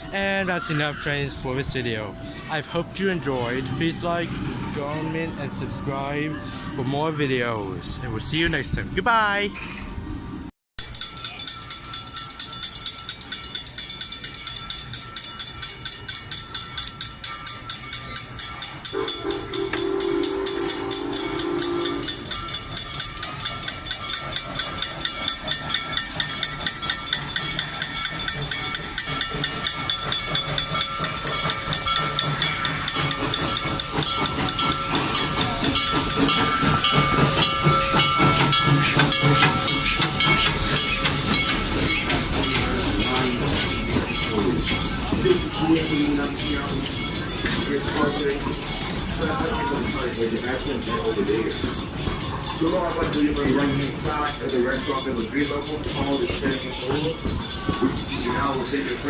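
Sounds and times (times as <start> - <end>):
train chuffing and hissing: 0.0 - 8.5, 11.0 - 59.0
train whistle blast: 18.9 - 22.2.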